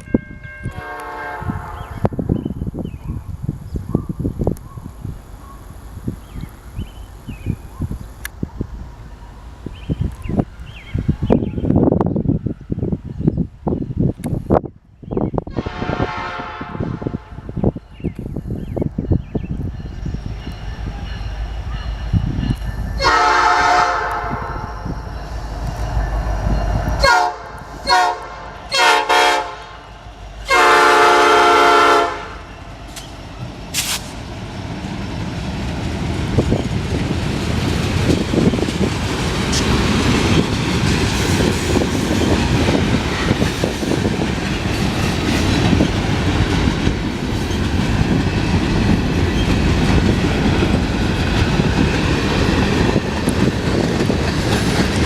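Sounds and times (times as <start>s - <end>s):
locomotive air horn: 0.0s - 2.1s, 15.5s - 17.6s, 23.0s - 24.8s, 27.0s - 29.8s, 30.4s - 32.5s
freight train rumbling by: 0.0s - 55.0s
train wheel noise on rails: 0.0s - 55.0s.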